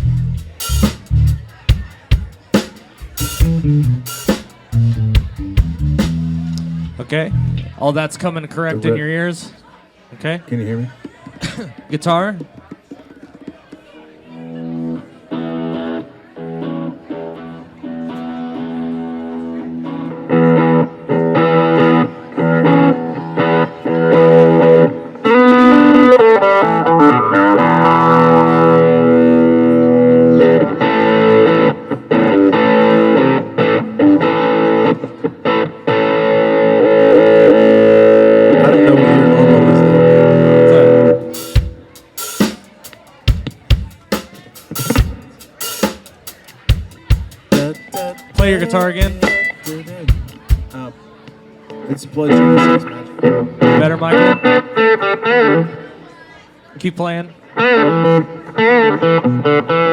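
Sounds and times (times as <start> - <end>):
drum hits: 0.0 - 6.4, 41.2 - 50.8
electric guitar strumming and riffs: 14.3 - 42.7, 43.3 - 56.1, 57.6 - 59.9.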